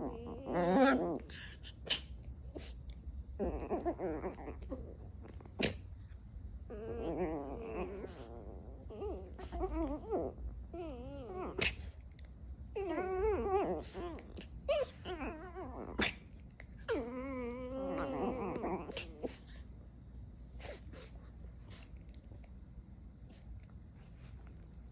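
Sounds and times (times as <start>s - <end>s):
puppy whining and whimpering: 0.0s - 1.6s, 3.3s - 5.6s, 6.7s - 11.9s, 12.7s - 16.2s, 16.8s - 19.6s.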